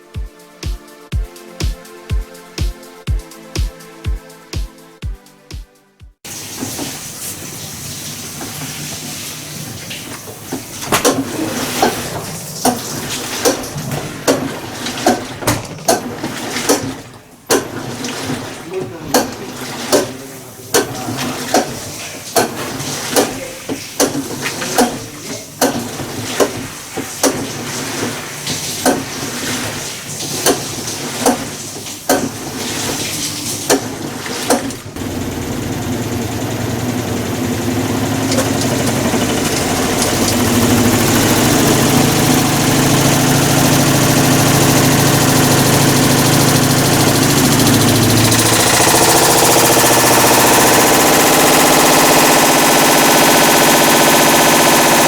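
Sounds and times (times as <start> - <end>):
washing machine grinding roar: 6.2 - 55.0
washing machine clacking knocks: 10.2 - 28.1, 28.7 - 29.6, 30.2 - 55.0.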